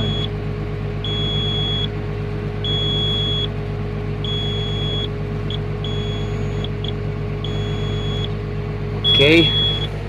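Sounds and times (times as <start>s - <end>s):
warning buzzer beeping: 0.0s - 0.3s, 2.6s - 3.5s, 4.3s - 5.1s, 5.8s - 8.3s, 9.0s - 9.9s
machine engine hum: 0.0s - 10.0s.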